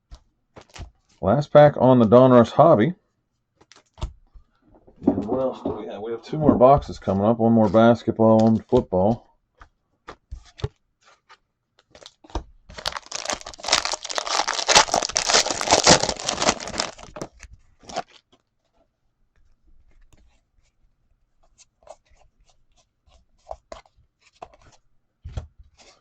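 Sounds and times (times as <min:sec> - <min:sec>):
wrapper tearing and crinkling: 0:11.9 - 0:18.3.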